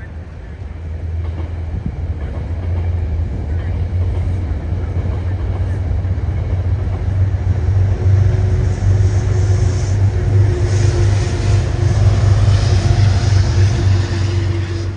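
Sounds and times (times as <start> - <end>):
train rumbling past: 0.0 - 14.9
steady hum: 8.5 - 14.9.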